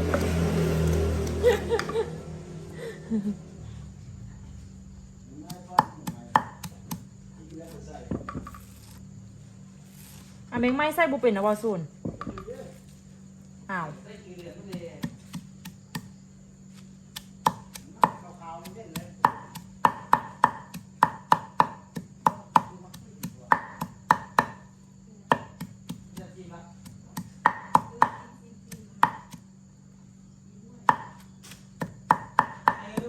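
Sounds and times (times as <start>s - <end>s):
steady low hum: 0.0s - 33.0s
food being chopped: 5.5s - 7.1s, 14.4s - 16.2s, 17.1s - 24.6s, 25.3s - 29.4s, 30.9s - 33.0s.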